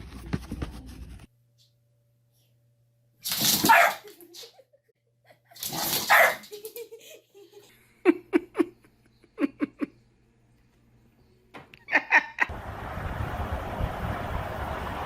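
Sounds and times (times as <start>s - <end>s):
person laughing: 6.4s - 10.0s, 11.7s - 12.5s
steady rumbling noise: 12.5s - 15.0s.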